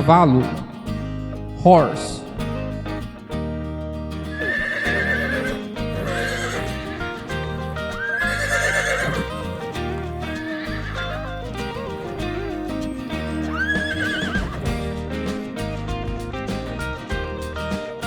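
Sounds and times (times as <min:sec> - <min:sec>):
background music: 0:00.0 - 0:18.0
horse whinnying: 0:04.3 - 0:14.8.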